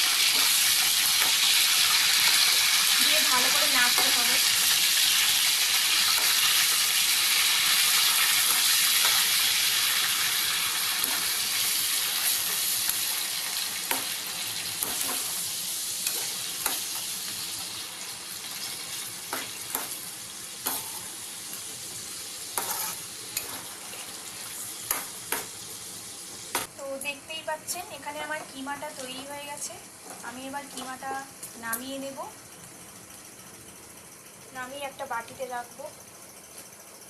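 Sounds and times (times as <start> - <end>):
meat sizzling in hot oil: 0.0 - 27.0
spoon knocking and scraping pan: 14.8 - 15.3, 22.6 - 24.0.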